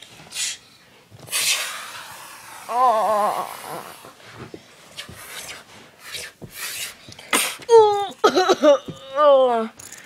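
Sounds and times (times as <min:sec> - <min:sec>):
breathy vocal hiss: 0:01.3 - 0:04.2.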